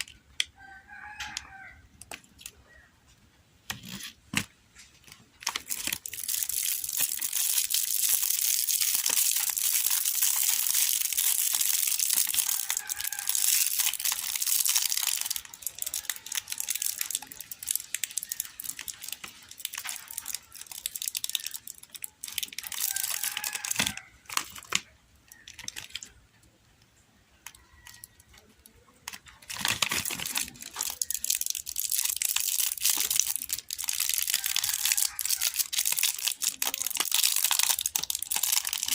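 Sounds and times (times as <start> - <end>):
wrappers crinkling and tearing: 3.7 - 26.2, 27.5 - 38.9.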